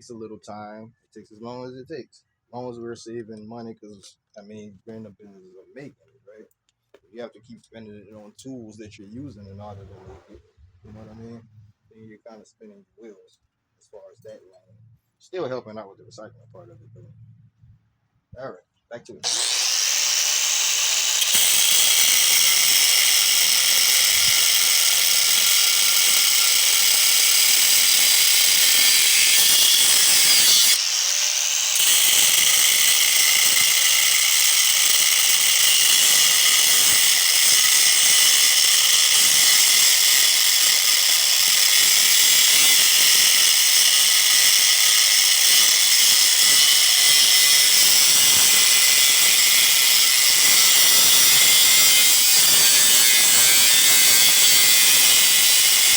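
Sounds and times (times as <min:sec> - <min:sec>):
angle grinder cutting metal: 0:19.2 - 0:55.9.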